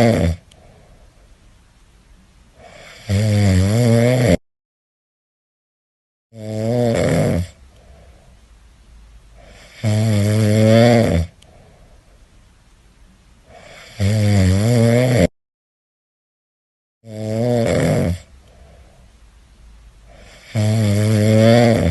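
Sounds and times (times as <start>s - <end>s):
cat snoring: 0.0s - 0.4s, 2.6s - 4.4s, 6.4s - 8.1s, 9.4s - 11.4s, 13.5s - 15.3s, 17.1s - 18.8s, 20.1s - 21.9s
soft breathing: 0.5s - 1.5s, 7.6s - 8.6s, 11.3s - 12.5s, 13.4s - 14.0s, 18.4s - 19.4s.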